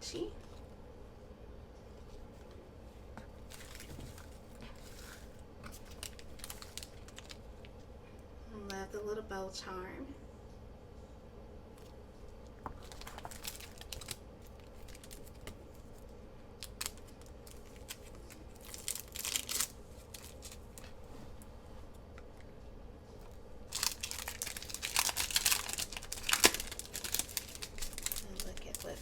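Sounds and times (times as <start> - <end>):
packaging clicks and rustles: 3.4 - 7.7, 12.7 - 20.9, 23.7 - 29.0
packaging crinkling and tearing: 3.4 - 7.7, 12.7 - 21.0, 23.6 - 29.0.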